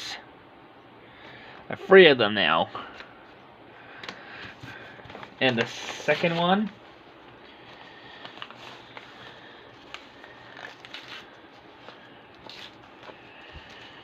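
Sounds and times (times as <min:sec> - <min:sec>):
trading cards rustling: 0:04.0 - 0:14.0
plastic packaging crinkling: 0:07.7 - 0:14.0.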